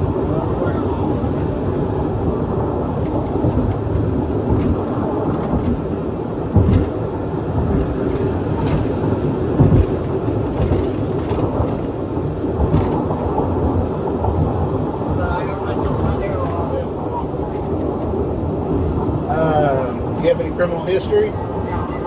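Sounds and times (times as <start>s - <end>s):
vehicle rumble from inside cab: 0.0s - 22.0s
loud thumps: 3.0s - 13.7s.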